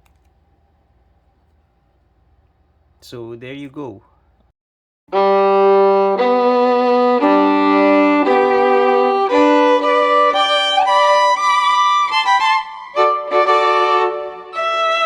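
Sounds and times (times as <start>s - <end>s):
violin playing slow melody: 5.1s - 15.0s.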